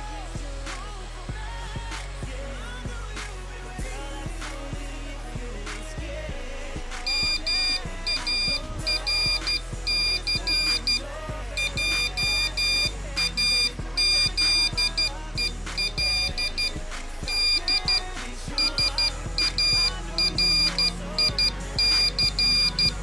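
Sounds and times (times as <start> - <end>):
background music: 0.0 - 23.0
morse code beeps: 7.1 - 23.0.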